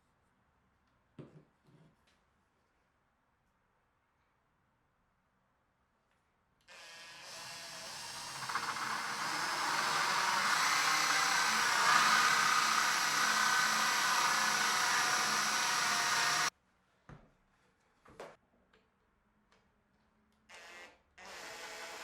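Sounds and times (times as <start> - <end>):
power tool running: 6.7 - 16.5.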